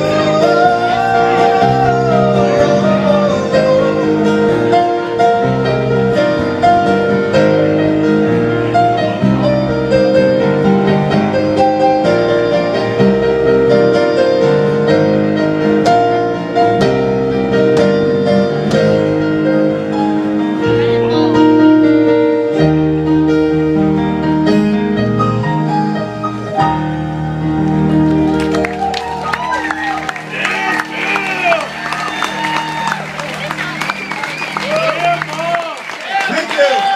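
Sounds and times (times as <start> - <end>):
piano chords: 0.0 - 36.9.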